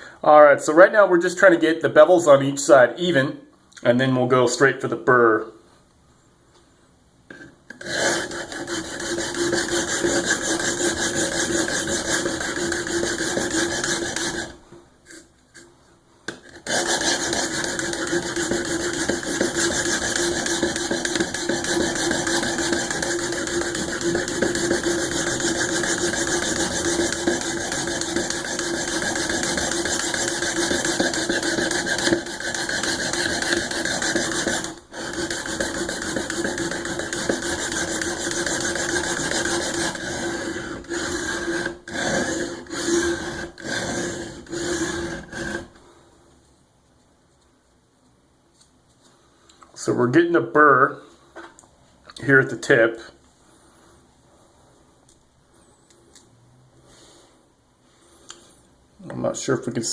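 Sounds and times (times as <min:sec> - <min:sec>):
knife blade rasping on sharpener: 0:07.3 - 0:15.7, 0:16.4 - 0:45.7.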